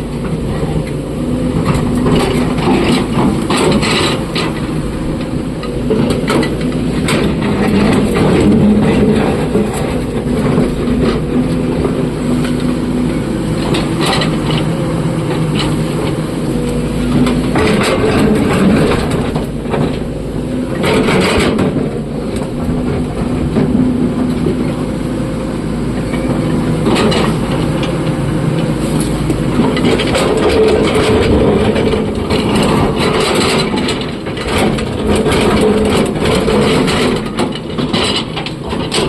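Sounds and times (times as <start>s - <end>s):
diesel excavator engine running: 0.0s - 39.0s.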